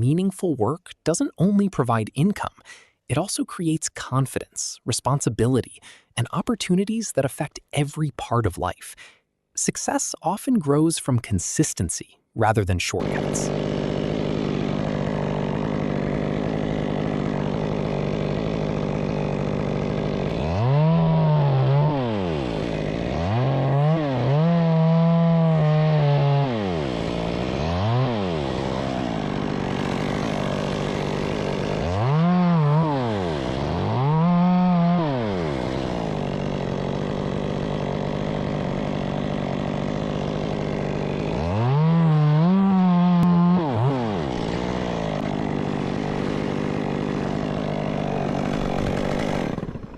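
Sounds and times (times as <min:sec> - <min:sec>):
chainsaw idling and revving: 0:13.0 - 0:49.9.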